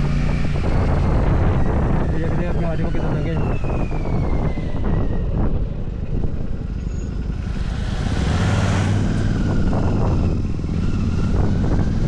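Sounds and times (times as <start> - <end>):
motorcycle engine droning: 4.6 - 12.0
short rush of noise: 7.3 - 9.5.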